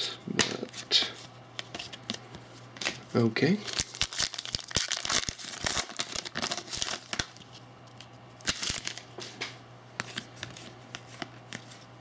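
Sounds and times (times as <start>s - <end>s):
wrapper crinkling and tearing: 3.6s - 7.6s, 8.4s - 9.1s.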